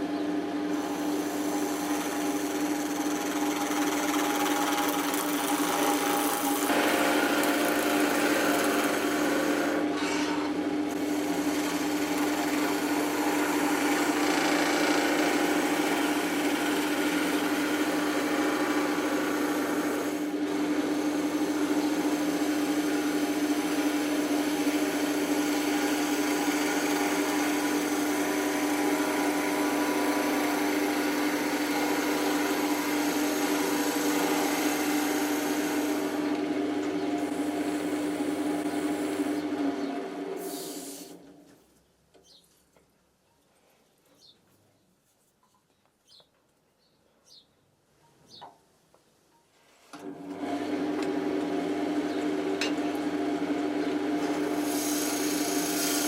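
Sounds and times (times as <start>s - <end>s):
power tool motor hum: 0.7s - 41.2s, 50.0s - 56.0s.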